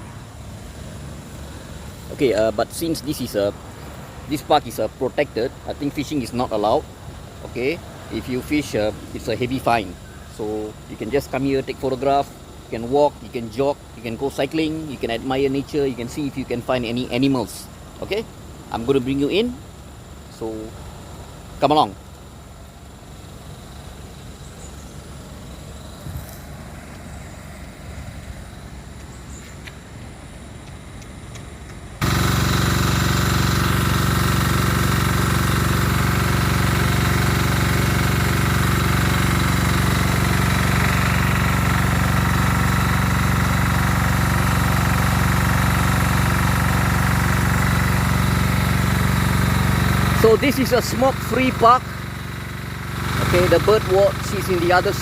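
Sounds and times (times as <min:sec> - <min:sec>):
faint outdoor background: 0:00.0 - 0:55.0
loud machine-like drone: 0:32.0 - 0:55.0.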